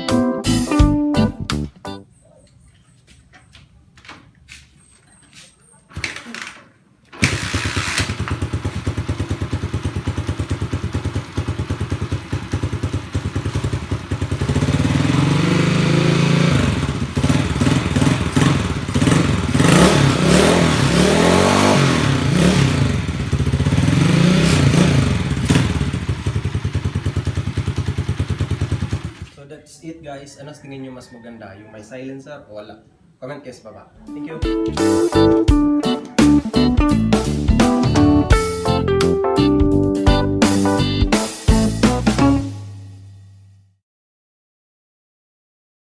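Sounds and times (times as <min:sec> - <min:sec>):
motorcycle engine idling and revving: 0:07.1 - 0:29.4, 0:42.5 - 0:43.8.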